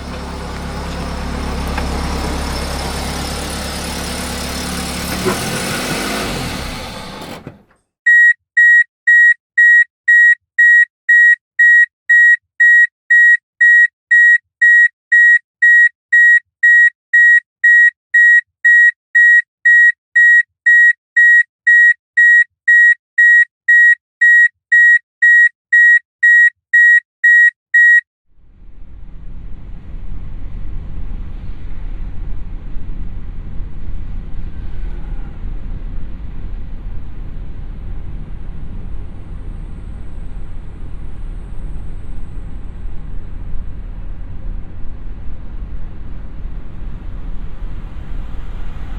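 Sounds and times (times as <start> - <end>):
car warning beeper: 8.1 - 28.1
low rumble: 28.3 - 48.9.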